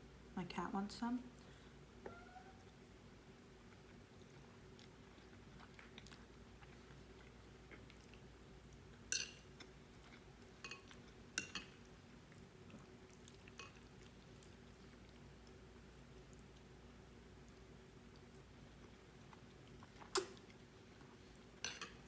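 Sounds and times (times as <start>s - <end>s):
faint steady hum: 0.0s - 22.0s
soft chewing: 1.3s - 22.0s
metal fork clinking on plate: 21.6s - 22.0s.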